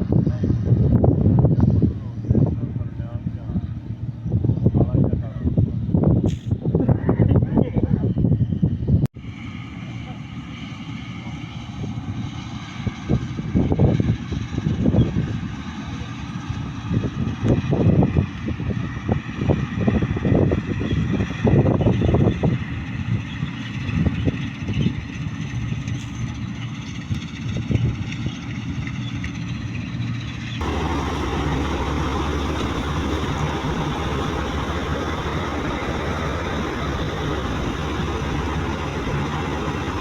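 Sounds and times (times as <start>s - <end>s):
combine harvester engine running: 22.4s - 40.0s
hissing machine running: 30.6s - 40.0s.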